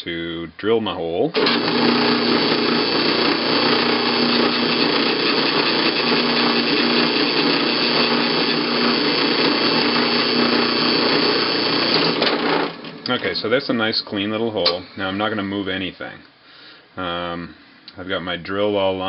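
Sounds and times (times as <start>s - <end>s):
drill press drilling aluminum: 1.4s - 13.1s.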